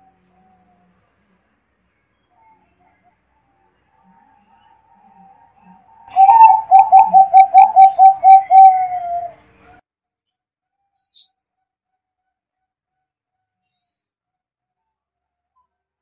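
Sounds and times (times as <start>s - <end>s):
dove cooing: 4.5s - 9.4s.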